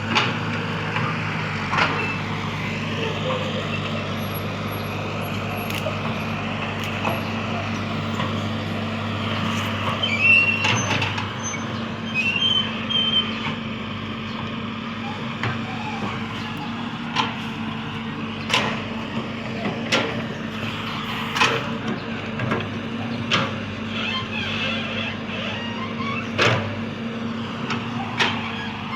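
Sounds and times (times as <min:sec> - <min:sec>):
excavator diesel engine running: 0:00.0 - 0:28.9
high squeals: 0:01.9 - 0:13.4.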